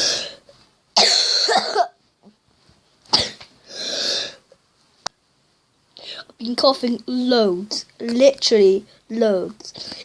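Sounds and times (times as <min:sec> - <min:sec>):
person coughing: 0:01.0 - 0:02.0, 0:03.1 - 0:03.5
noisy breath: 0:03.6 - 0:04.5, 0:06.0 - 0:06.4.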